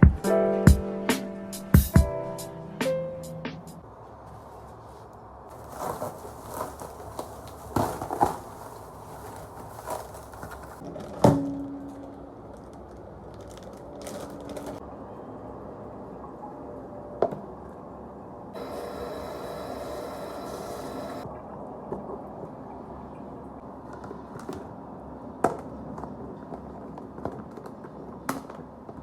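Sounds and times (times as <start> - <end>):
steady hiss: 18.6 - 21.2.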